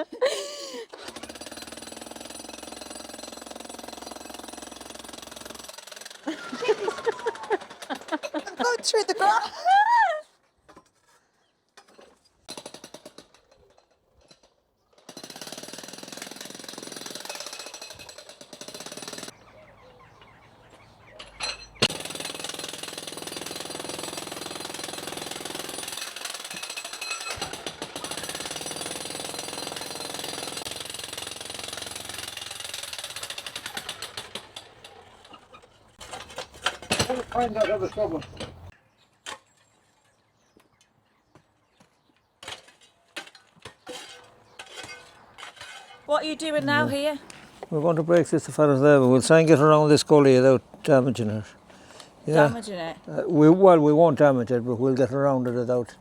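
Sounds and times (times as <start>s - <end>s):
jackhammer breaking concrete: 1.0s - 8.1s, 15.1s - 19.3s, 21.8s - 35.2s.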